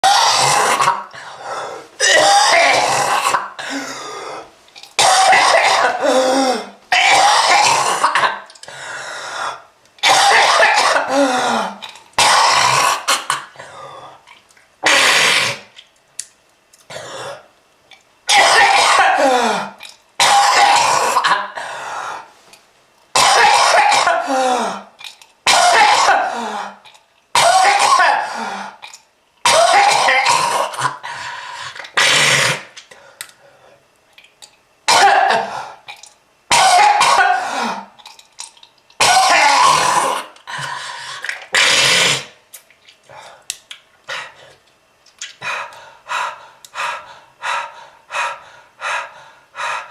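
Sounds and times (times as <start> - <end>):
person coughing and clearing throat: 2.0 - 3.8, 5.0 - 8.5, 10.0 - 13.6, 18.3 - 21.6, 23.2 - 24.9, 25.5 - 26.8, 27.4 - 28.4, 29.5 - 31.0, 34.9 - 35.7, 36.5 - 37.9, 39.0 - 40.4.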